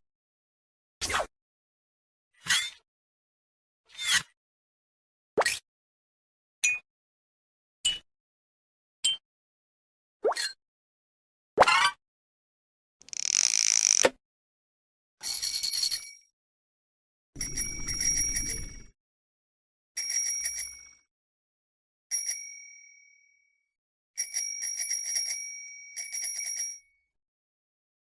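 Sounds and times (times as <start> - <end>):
small bell ringing: 22.1 - 23.1, 24.2 - 26.9.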